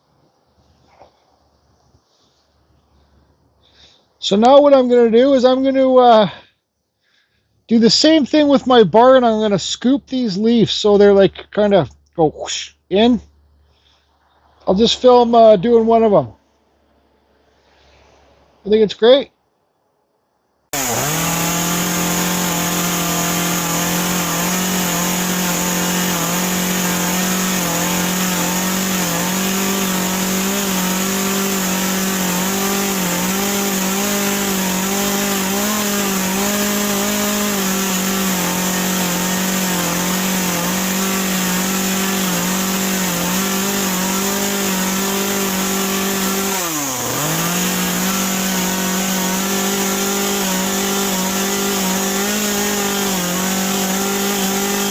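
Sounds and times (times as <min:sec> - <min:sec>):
chainsaw cutting wood: 0:20.7 - 0:54.9.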